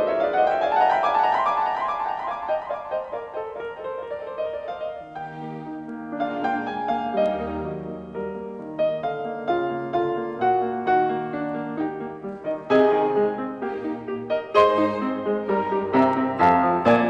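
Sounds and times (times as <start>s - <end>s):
classical piano music: 0.0s - 17.0s.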